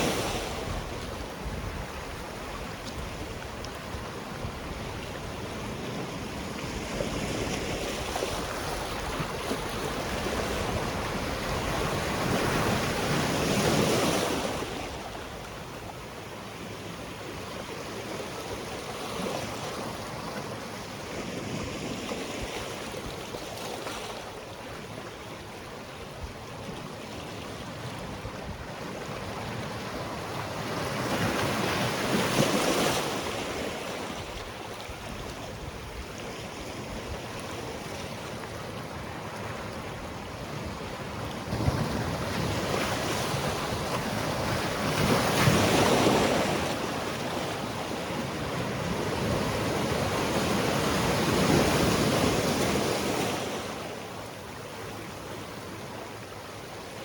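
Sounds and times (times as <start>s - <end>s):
waves washing onto rocky shore: 28.1s - 57.0s.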